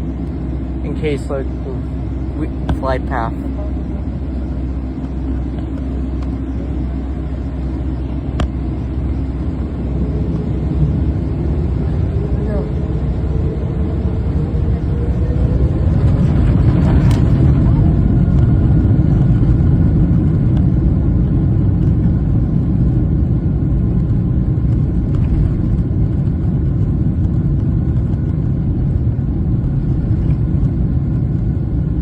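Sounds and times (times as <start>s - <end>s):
jet engines spooling up: 0.0s - 20.8s.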